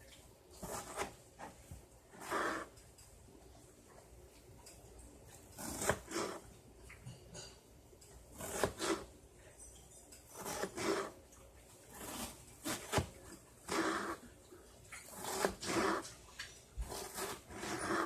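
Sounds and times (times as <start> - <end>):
utensil scraping in a pan: 0.0 - 3.1, 5.4 - 7.6, 8.3 - 9.2, 10.2 - 11.2, 11.8 - 18.0.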